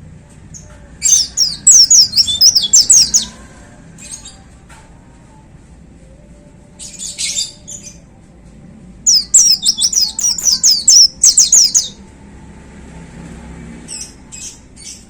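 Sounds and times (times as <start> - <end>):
bird singing high fast notes: 1.1 - 3.3, 9.1 - 12.0.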